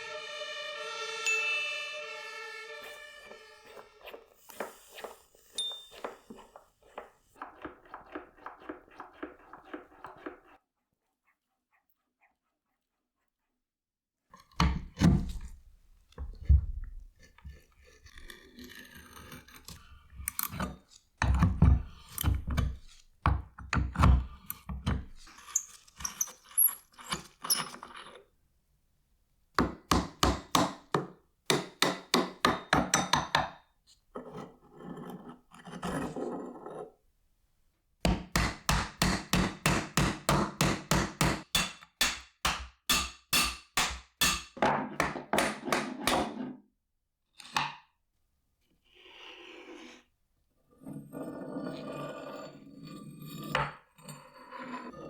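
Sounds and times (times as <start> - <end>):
hammer blows on metal axe: 38.1 - 44.6.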